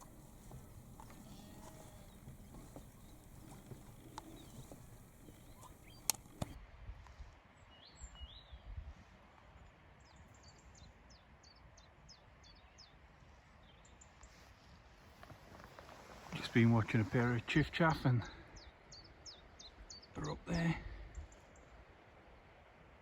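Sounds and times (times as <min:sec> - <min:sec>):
faint bird song: 0:00.0 - 0:06.6, 0:07.6 - 0:08.9, 0:09.5 - 0:22.6
sharp clicks: 0:00.0 - 0:06.6.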